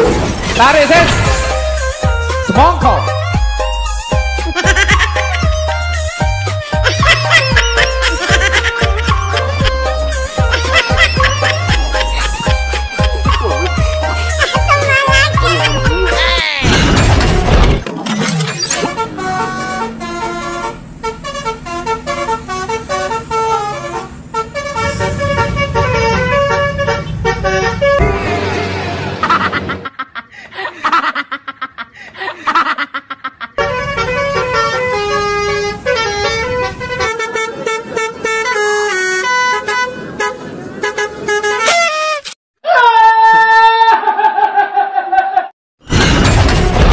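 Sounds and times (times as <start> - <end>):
musical air horn playing tune: 18.8 - 29.1, 33.6 - 42.4.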